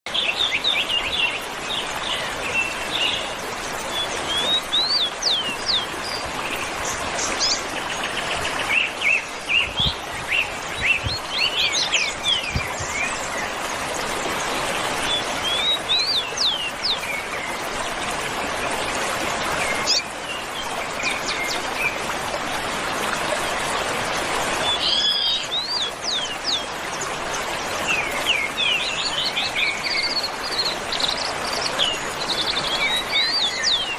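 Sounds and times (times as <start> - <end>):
wild birds chirping: 0.1 - 18.0.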